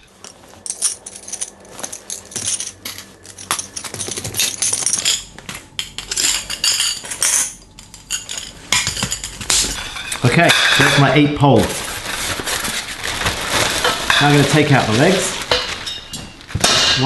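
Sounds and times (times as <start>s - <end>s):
metal poles clinking and knocking: 0.1s - 11.1s.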